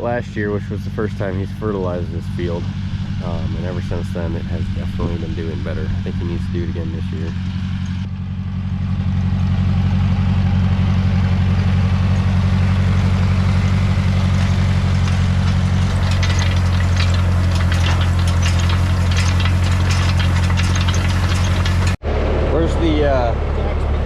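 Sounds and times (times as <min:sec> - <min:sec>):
tractor engine running: 0:00.0 - 0:24.0
clicks and rattles: 0:14.2 - 0:22.0.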